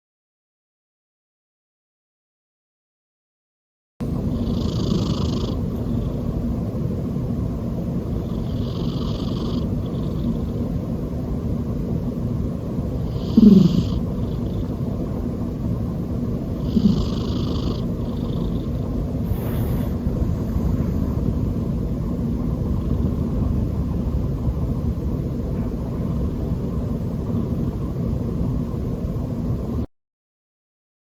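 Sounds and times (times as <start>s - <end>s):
cat snoring: 4.1s - 6.4s, 8.0s - 10.8s, 13.0s - 15.0s, 16.5s - 23.8s.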